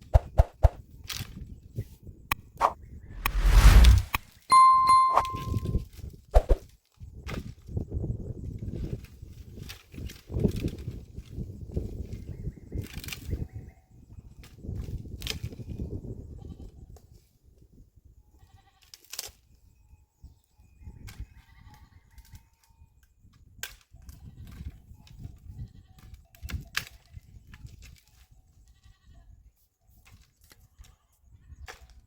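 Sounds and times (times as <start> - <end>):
low rumble: 2.6 - 4.2.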